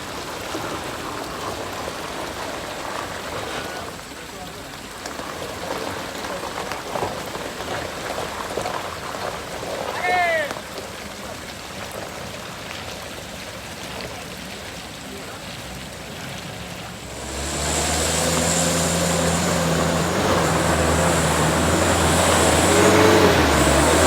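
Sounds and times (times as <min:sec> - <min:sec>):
heavy truck engine running: 0:15.8 - 0:24.0.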